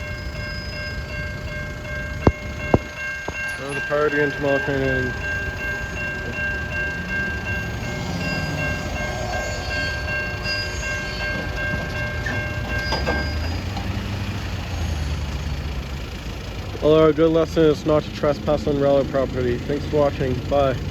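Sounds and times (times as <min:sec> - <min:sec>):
high-pitched wheel squeal: 0:00.0 - 0:15.4
freight train low rumble: 0:00.0 - 0:20.9.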